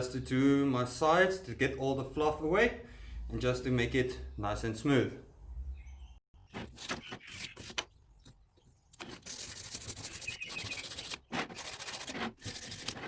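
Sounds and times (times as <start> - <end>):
hand sanding wood: 9.0 - 13.0.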